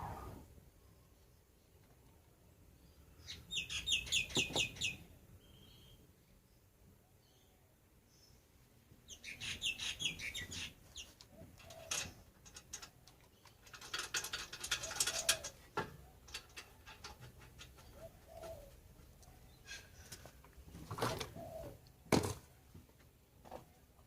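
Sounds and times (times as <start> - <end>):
dove cooing: 11.3 - 12.2, 14.3 - 15.7, 17.6 - 19.0, 20.9 - 21.8.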